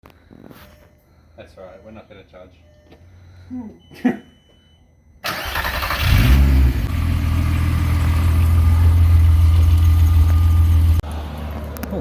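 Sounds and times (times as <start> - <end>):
car engine starting and idling: 5.2 - 12.0.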